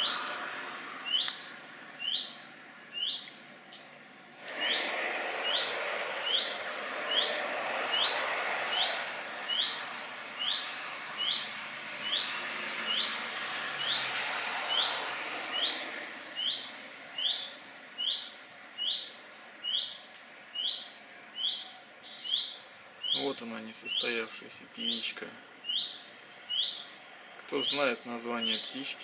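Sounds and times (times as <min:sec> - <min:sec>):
rushing noise: 0:00.0 - 0:02.1, 0:04.3 - 0:18.0.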